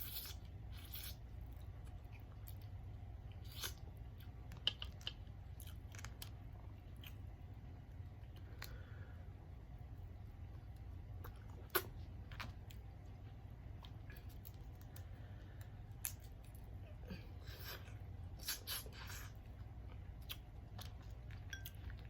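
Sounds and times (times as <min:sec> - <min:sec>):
shells cracking and chewing: 0:03.4 - 0:07.2.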